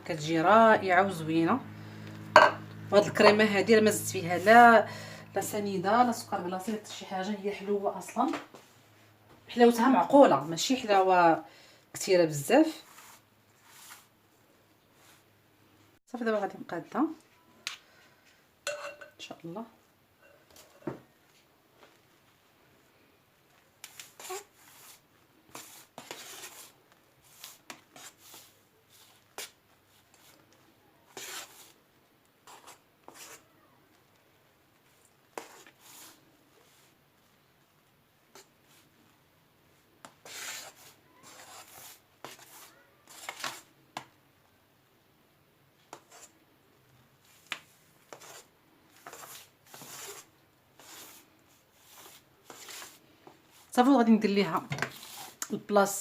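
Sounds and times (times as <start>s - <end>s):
utensil scraping cream in dish: 23.9s - 30.4s, 31.1s - 31.8s, 32.5s - 33.5s, 35.3s - 36.9s, 40.2s - 43.7s, 45.9s - 46.4s, 48.1s - 53.7s, 54.9s - 55.5s.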